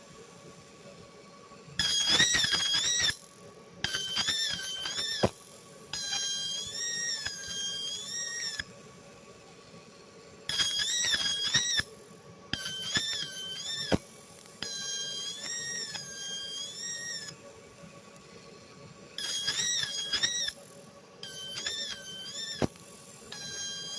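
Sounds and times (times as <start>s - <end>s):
laser whistling screech: 1.8s - 8.7s, 10.5s - 11.9s, 12.5s - 17.4s, 19.2s - 23.9s.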